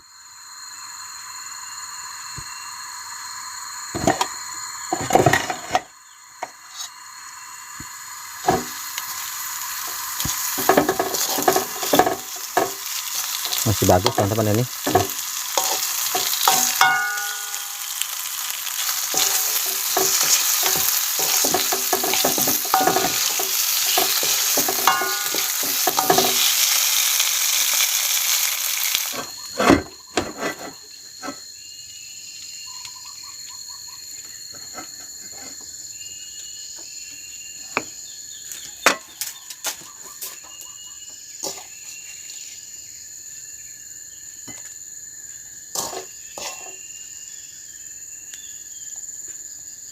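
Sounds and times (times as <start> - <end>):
food sizzling in a pan: 0.0 - 29.8, 37.8 - 42.7, 45.6 - 47.3
cricket chirps: 0.0 - 49.9
high insect drone: 0.0 - 49.9
utensil stirring and tapping pan: 10.2 - 17.9, 18.9 - 26.7.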